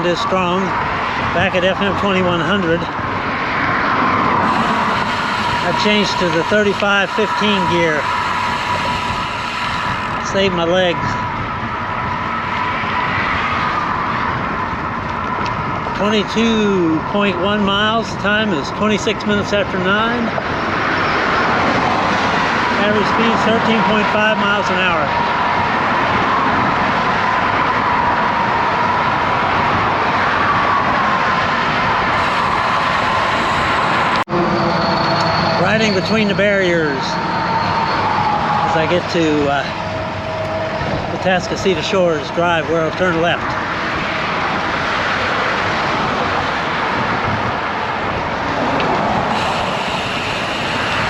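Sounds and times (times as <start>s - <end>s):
road traffic hum: 0.0s - 51.0s
wind rushing over microphone: 0.0s - 51.0s.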